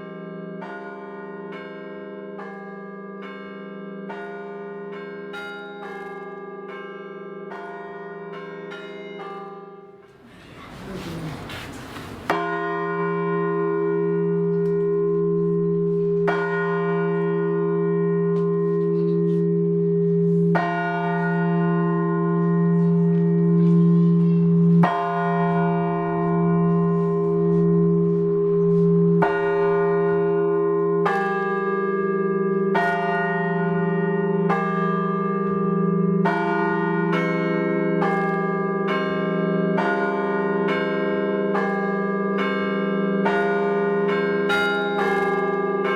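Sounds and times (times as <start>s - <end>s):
church bells ringing: 0.0s - 10.8s, 11.6s - 45.9s.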